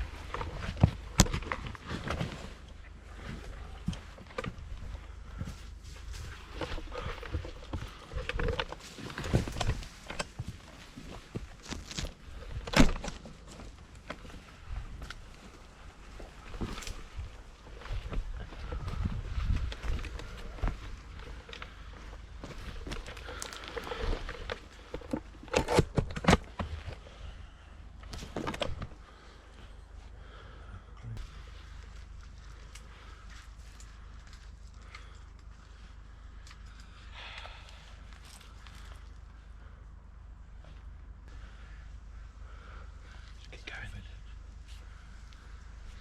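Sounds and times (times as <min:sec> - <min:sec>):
footsteps through undergrowth: 0:00.0 - 0:25.4
microphone handling rumble: 0:00.0 - 0:27.0
twigs crackling and snapping: 0:00.0 - 0:27.2, 0:31.2 - 0:39.5.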